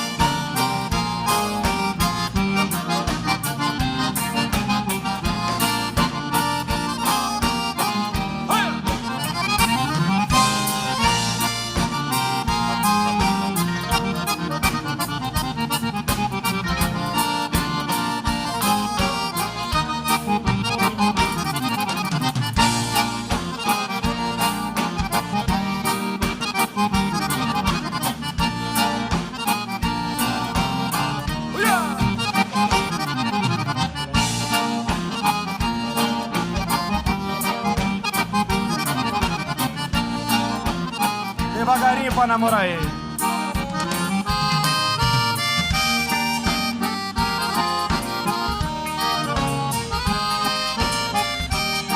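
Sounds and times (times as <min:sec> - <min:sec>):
accordion-led dance band: 0:00.0 - 0:51.9
guitar: 0:00.0 - 0:51.9.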